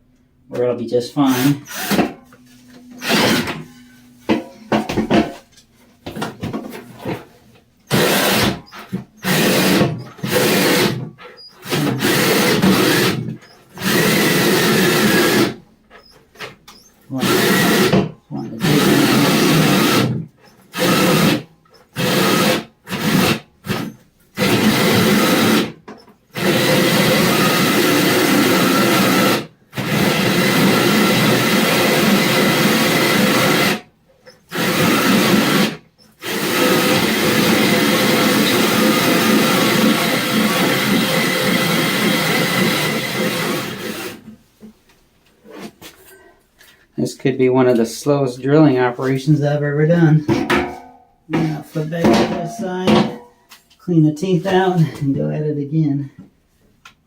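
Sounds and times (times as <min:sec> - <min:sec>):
cordless drill with hole saw: 0:01.2 - 0:03.6, 0:07.8 - 0:44.3.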